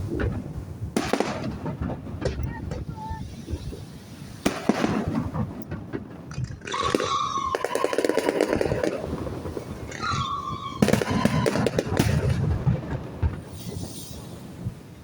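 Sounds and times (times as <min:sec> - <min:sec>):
fireworks crackling: 0:00.0 - 0:15.0
loud firework bang: 0:10.2 - 0:13.4.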